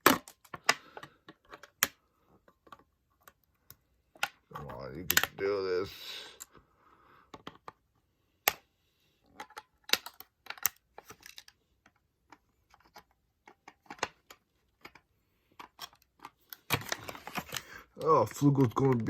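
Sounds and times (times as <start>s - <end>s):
plastic clicks and rattles: 0.0s - 5.4s, 9.3s - 19.0s.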